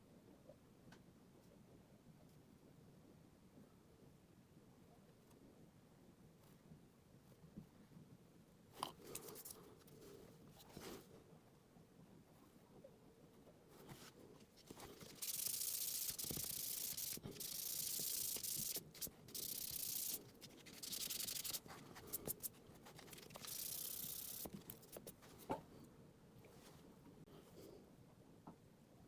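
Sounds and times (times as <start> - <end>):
scratchy rubbing strokes: 13.8 - 25.6.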